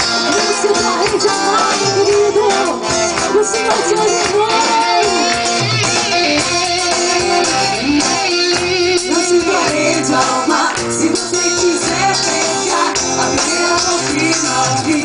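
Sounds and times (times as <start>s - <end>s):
person singing: 0.0s - 15.0s
plucked guitar: 0.0s - 15.0s
steady bass line: 0.0s - 15.0s.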